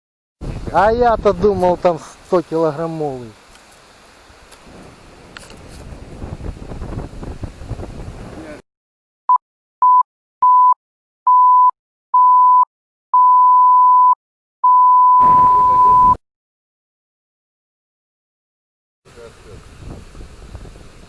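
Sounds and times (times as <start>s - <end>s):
outdoor wind noise: 3.4s - 8.6s, 19.4s - 21.0s
censor bleep tone: 9.8s - 16.2s.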